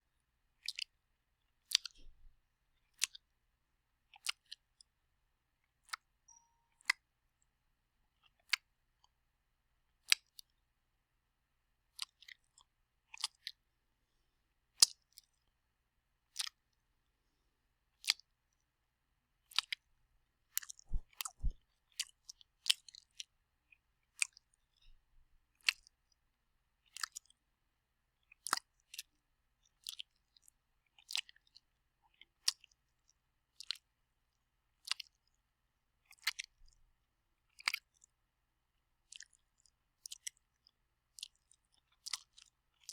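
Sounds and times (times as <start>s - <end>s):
wet mouth clicks and smacks: 1.7s - 2.2s, 13.2s - 13.6s, 16.4s - 16.6s, 20.6s - 22.1s, 25.6s - 25.8s, 29.8s - 31.6s, 33.6s - 33.8s, 34.8s - 35.3s, 36.1s - 36.8s, 39.1s - 42.9s.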